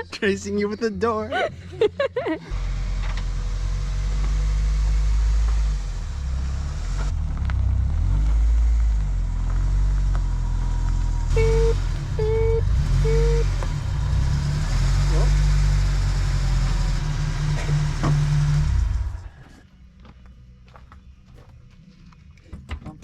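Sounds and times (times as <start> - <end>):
car engine idling: 2.4 - 19.6
short beeps: 11.3 - 13.6.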